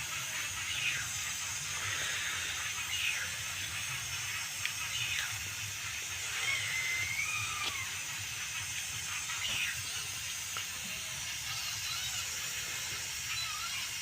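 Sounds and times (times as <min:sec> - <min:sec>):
steady hiss: 0:00.0 - 0:14.0
baby monkey squeaky calls: 0:06.2 - 0:08.0.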